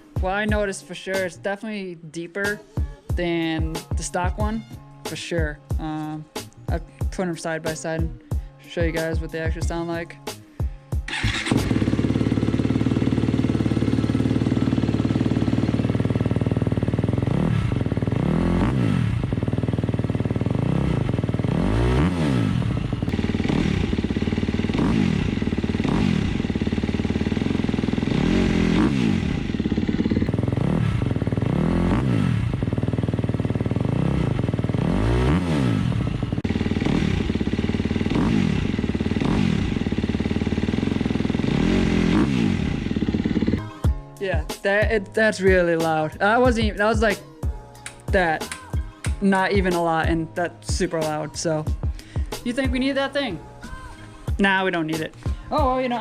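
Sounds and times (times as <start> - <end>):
dirt bike engine revving: 11.1 - 43.7.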